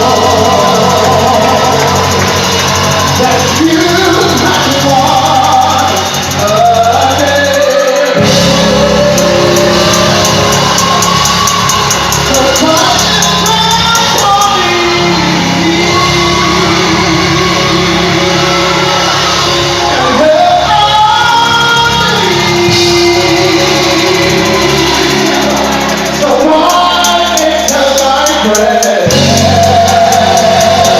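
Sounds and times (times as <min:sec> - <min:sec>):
fast high ticking: 0:00.0 - 0:14.9, 0:22.4 - 0:30.9
gospel band playing: 0:00.0 - 0:30.9.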